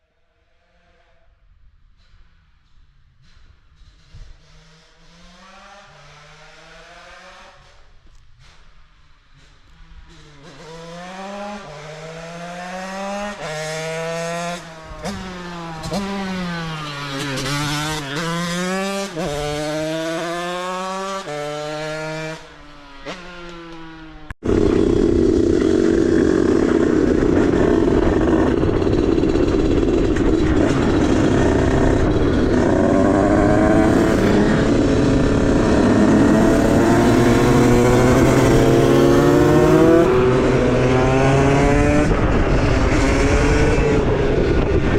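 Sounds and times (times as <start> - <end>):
moped engine revving: 10.1 - 44.9.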